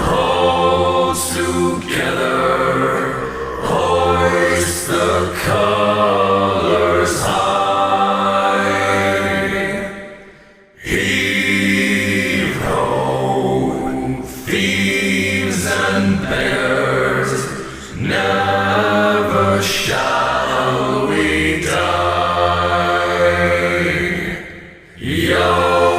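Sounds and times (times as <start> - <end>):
low voices singing a cappella: 0.0 - 25.9
singers breathing: 3.1 - 3.6, 9.9 - 10.8, 17.5 - 18.0, 24.4 - 25.1.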